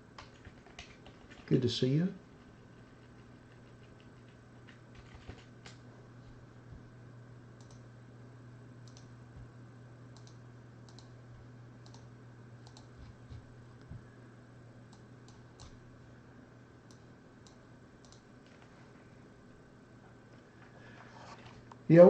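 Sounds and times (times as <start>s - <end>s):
low electrical hum: 0.0s - 22.0s
computer mouse clicking: 7.6s - 7.8s, 8.8s - 9.1s, 10.2s - 11.2s, 11.8s - 14.0s, 14.9s - 15.8s, 16.9s - 18.7s.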